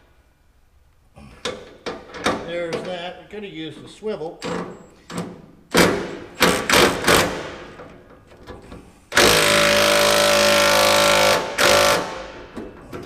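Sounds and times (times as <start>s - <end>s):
power tool running: 9.2s - 12.4s.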